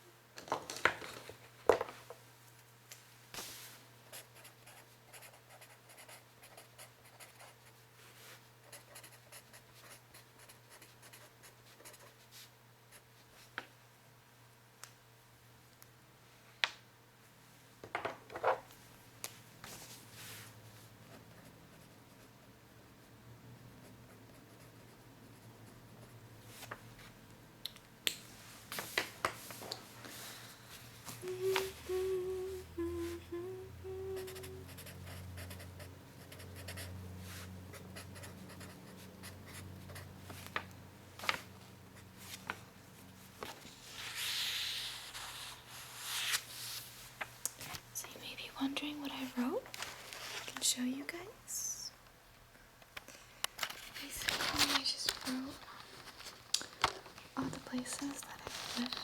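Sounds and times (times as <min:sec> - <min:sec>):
person humming: 0:31.2 - 0:34.9
pen scratching on paper: 0:34.4 - 0:36.9.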